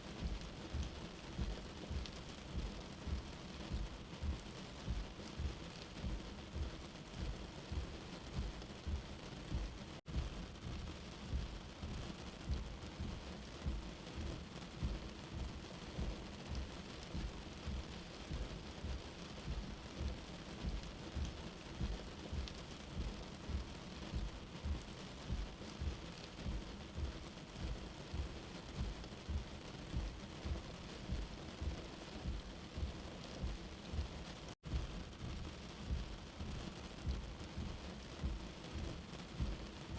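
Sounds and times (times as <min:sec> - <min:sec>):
steady rain: 0:00.0 - 0:39.9
pulsing low rumble: 0:14.8 - 0:39.9.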